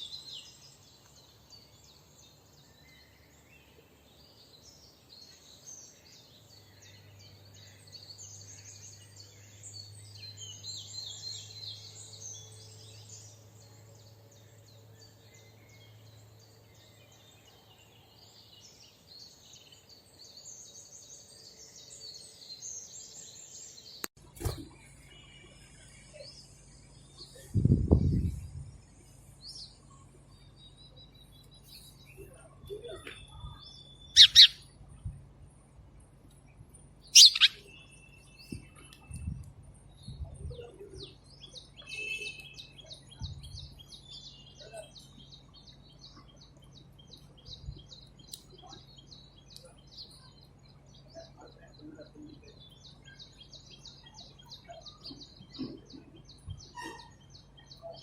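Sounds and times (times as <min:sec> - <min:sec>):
songbirds chirping and singing: 0:00.0 - 0:58.0
sharp bird calls: 0:33.0 - 0:34.7, 0:37.1 - 0:38.9
high bird trill: 0:33.3 - 0:34.7, 0:37.0 - 0:38.4.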